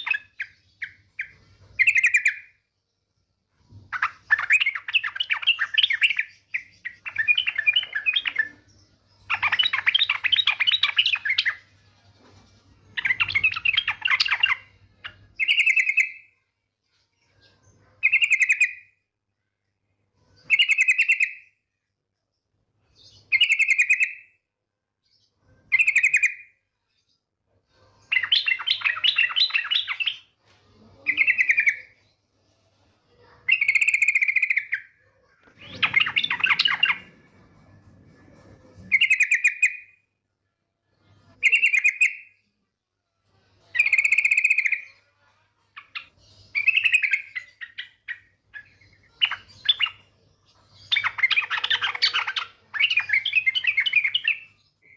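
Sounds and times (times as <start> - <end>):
bird chattering and calling: 33.4 - 37.2, 50.8 - 54.5.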